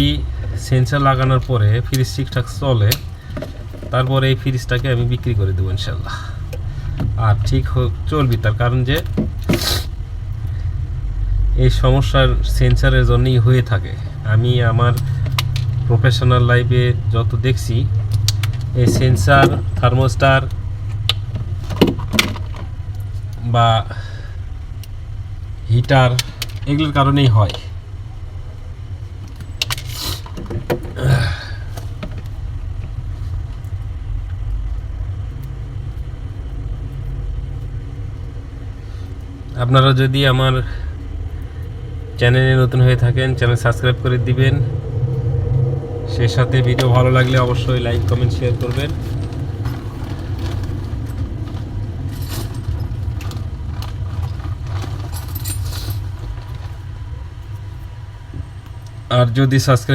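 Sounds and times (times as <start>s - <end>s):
steady low rumble: 0.0s - 59.9s
short rustle: 47.2s - 56.9s.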